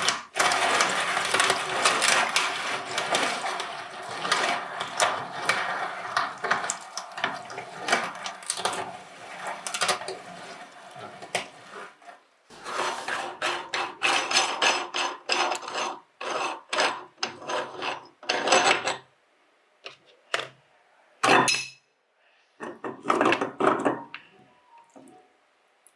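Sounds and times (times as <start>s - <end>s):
meat grinder crunching: 0.0s - 11.6s.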